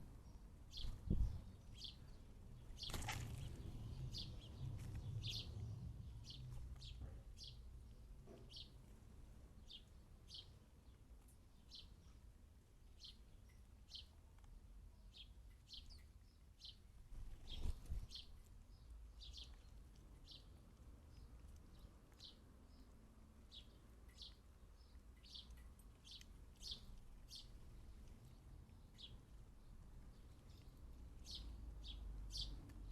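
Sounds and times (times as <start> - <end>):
sparrow chirping: 0.0 - 14.2, 14.8 - 32.9.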